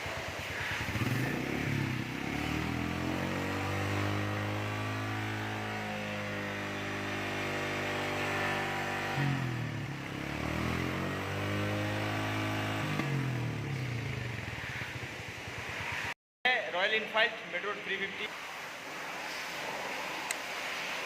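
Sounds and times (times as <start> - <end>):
motorcycle engine revving: 0.0 - 16.2.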